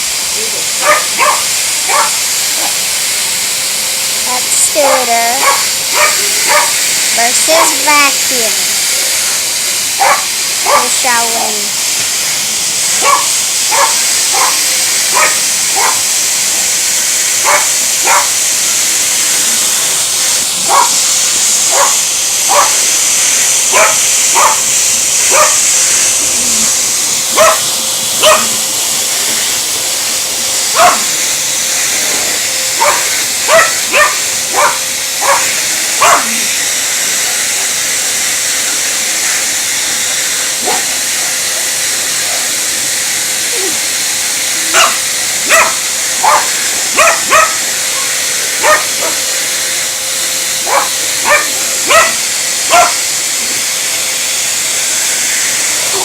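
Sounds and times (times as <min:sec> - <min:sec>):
vacuum cleaner running: 0:00.0 - 0:56.0
dog barking: 0:00.8 - 0:02.8, 0:04.9 - 0:06.8, 0:10.0 - 0:10.9, 0:13.0 - 0:16.1, 0:17.4 - 0:18.4, 0:20.6 - 0:21.0, 0:21.7 - 0:22.8, 0:23.7 - 0:24.6, 0:25.3 - 0:25.6, 0:27.3 - 0:28.6, 0:30.7 - 0:31.1, 0:32.8 - 0:36.4, 0:40.6 - 0:40.9, 0:44.7 - 0:49.2, 0:50.6 - 0:53.0.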